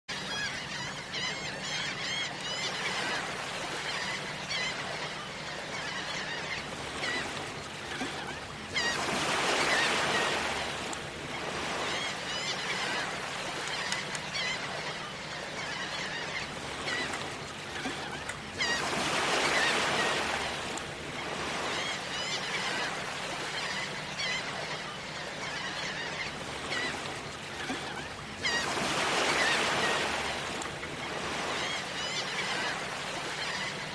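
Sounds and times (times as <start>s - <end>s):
shorebirds chattering calls: 0.1s - 33.9s
waves breaking and washing in: 0.1s - 33.9s.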